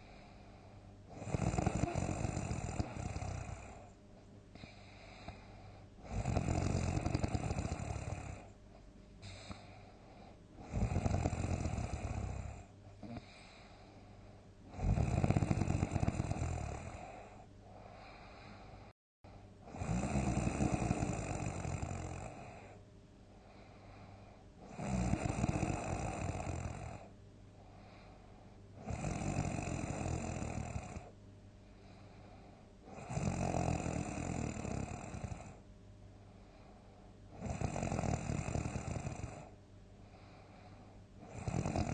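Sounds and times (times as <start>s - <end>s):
quiet breathing: 0.0s - 41.9s
person snoring heavily: 1.1s - 3.9s, 4.6s - 8.5s, 10.6s - 13.8s, 14.7s - 18.9s, 19.7s - 22.8s, 24.6s - 27.1s, 28.8s - 31.1s, 32.9s - 35.6s, 37.4s - 39.5s, 41.2s - 41.9s.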